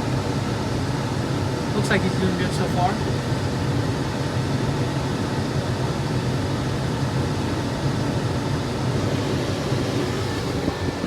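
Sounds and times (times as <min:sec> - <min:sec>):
combine harvester mechanical hum: 0:06.2 - 0:11.0.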